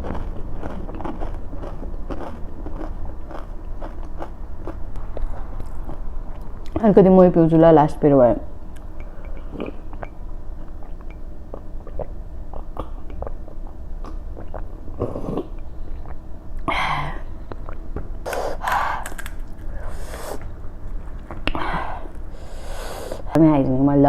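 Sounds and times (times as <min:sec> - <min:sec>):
wet mouth clicks and chewing: 0:00.0 - 0:06.8, 0:08.7 - 0:14.7, 0:17.5 - 0:19.7
sharp breaths through mouth: 0:21.6 - 0:23.3.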